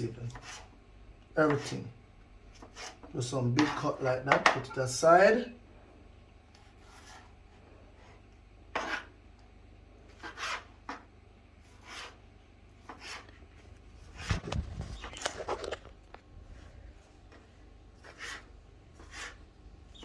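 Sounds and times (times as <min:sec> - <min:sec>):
knife cutting tomatoes: 0:17.3 - 0:19.4.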